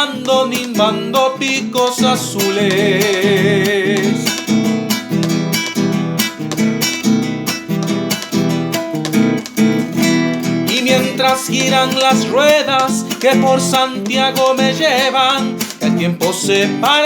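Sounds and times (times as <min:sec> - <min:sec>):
person singing with vibrato: 0:00.0 - 0:04.6, 0:10.7 - 0:17.0
acoustic guitar strumming: 0:00.0 - 0:17.0.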